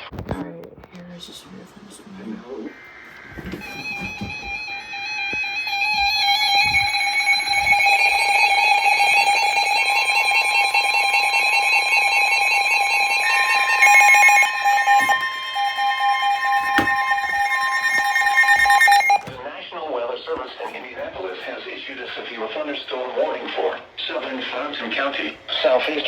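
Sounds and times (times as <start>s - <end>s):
weather radio pulsing alarm: 1.0s - 19.4s
steady warning alarm tone: 1.2s - 19.4s.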